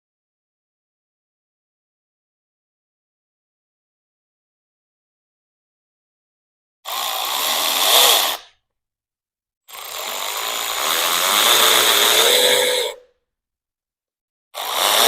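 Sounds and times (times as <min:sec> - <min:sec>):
power tool motor whining: 0:06.9 - 0:08.5, 0:09.7 - 0:13.0, 0:14.6 - 0:15.0.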